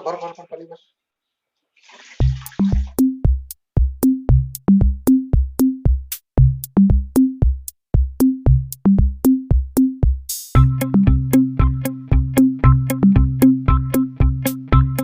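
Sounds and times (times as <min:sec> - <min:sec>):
electronic drum-machine beat: 0:02.2 - 0:15.0
low bass notes: 0:10.6 - 0:15.0.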